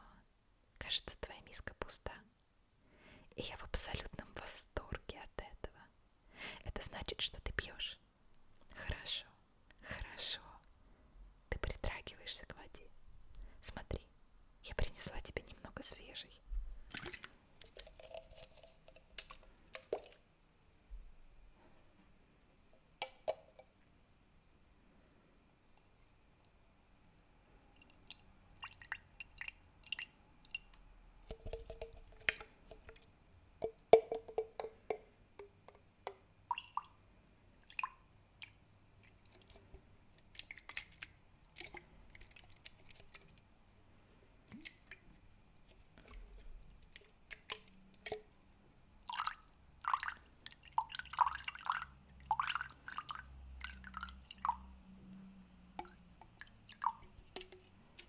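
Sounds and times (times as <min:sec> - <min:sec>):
water dripping and splashing in bowl: 0:16.8 - 0:20.2, 0:26.4 - 0:35.0, 0:36.1 - 0:43.5, 0:44.4 - 0:55.0, 0:55.7 - 0:58.0.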